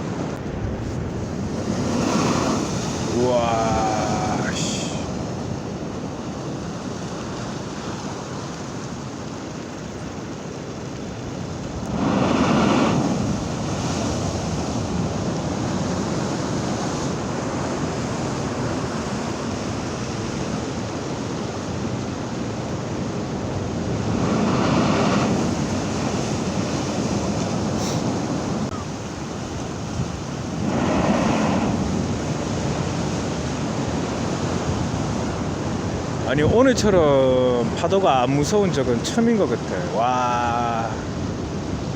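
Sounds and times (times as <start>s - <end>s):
rush of surf: 0.0s - 41.9s
waves crashing on shore: 0.0s - 41.9s
wind buffeting microphone: 0.0s - 41.9s.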